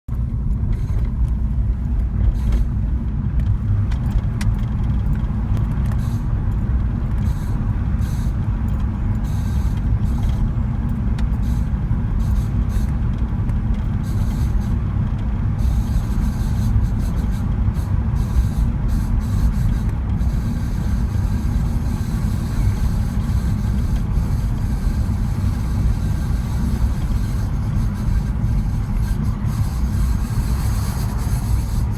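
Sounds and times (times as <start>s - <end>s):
vehicle rumble in motion: 0.1s - 31.9s
rear wheel scraping: 15.6s - 31.9s.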